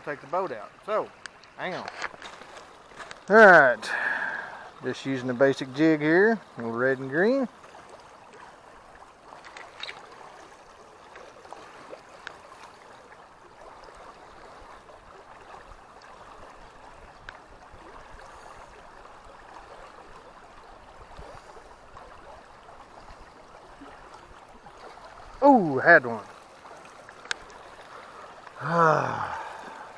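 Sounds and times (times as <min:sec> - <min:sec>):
creek water running: 0:00.0 - 0:29.9
faint clicks: 0:01.2 - 0:03.2, 0:17.2 - 0:17.4, 0:27.2 - 0:27.5.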